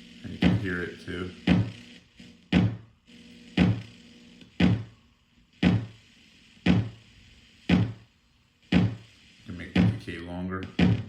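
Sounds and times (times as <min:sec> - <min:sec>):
electronic kick drum hits: 0:00.4 - 0:00.7, 0:01.5 - 0:01.7, 0:02.5 - 0:02.9, 0:03.6 - 0:03.9, 0:04.6 - 0:04.9, 0:05.6 - 0:06.0, 0:06.7 - 0:07.0, 0:07.7 - 0:08.0, 0:08.7 - 0:09.0, 0:10.7 - 0:11.0.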